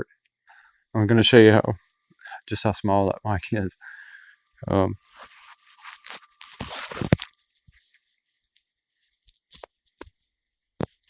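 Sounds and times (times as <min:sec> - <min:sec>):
microphone handling rustle: 0:05.0 - 0:07.3.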